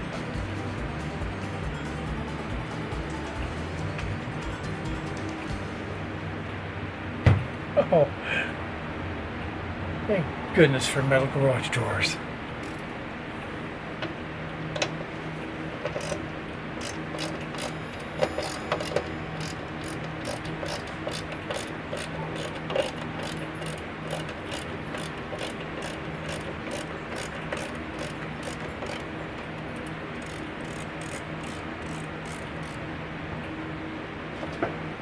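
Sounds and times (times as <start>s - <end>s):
ratcheting screwdriver clicking: 12.6s - 12.9s, 15.8s - 29.2s, 29.8s - 32.8s.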